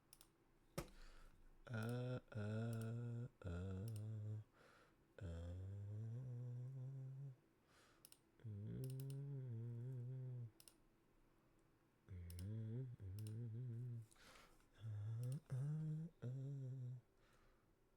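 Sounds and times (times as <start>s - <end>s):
man humming: 1.6s - 4.6s, 5.2s - 7.4s, 8.4s - 10.7s, 12.1s - 17.1s.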